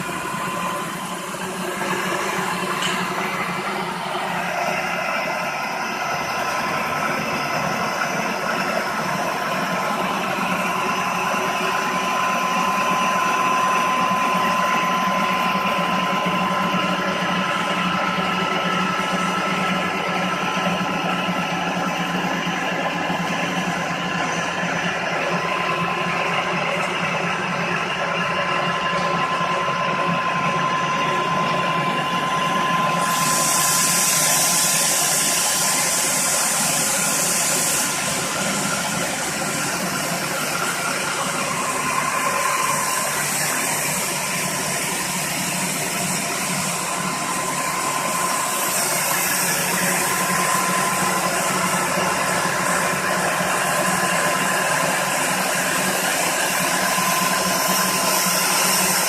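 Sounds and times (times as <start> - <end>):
floor grinding machine whining: 0.0 - 59.0
high hiss: 32.9 - 59.0.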